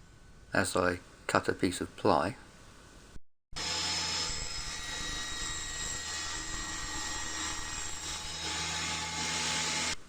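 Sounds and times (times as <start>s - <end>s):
saw blade cutting plywood: 3.6s - 10.0s
table saw motor whining: 3.6s - 10.0s.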